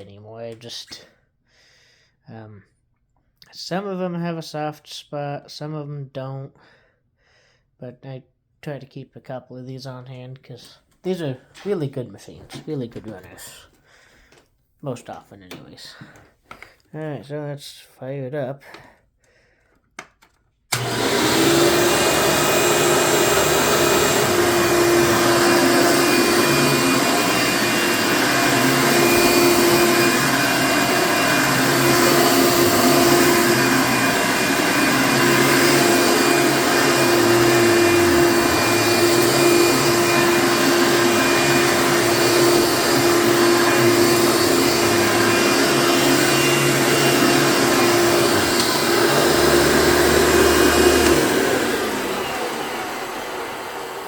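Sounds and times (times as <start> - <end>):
vacuum cleaner running with whine: 20.7 - 54.0.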